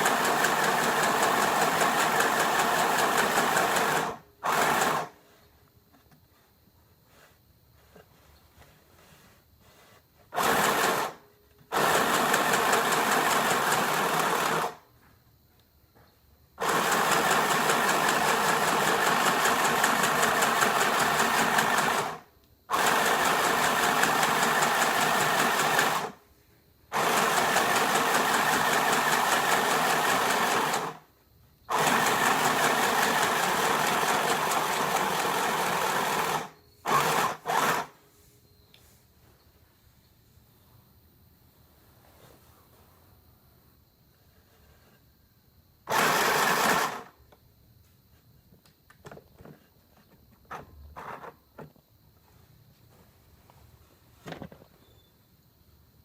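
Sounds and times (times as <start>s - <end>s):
sewing machine running: 0.0s - 5.2s, 10.4s - 14.8s, 16.6s - 26.2s, 26.9s - 31.0s, 31.7s - 38.0s, 45.9s - 47.1s.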